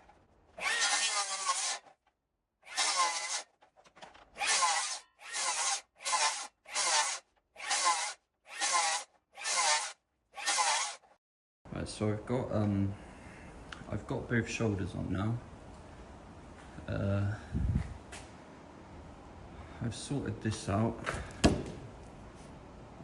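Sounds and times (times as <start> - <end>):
hand saw cutting wood: 0.6 - 2.0, 2.6 - 11.1.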